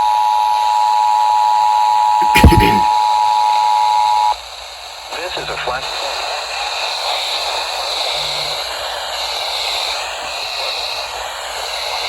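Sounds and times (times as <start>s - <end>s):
faint automated voice: 2.2s - 2.9s
radio static hiss: 2.2s - 2.9s.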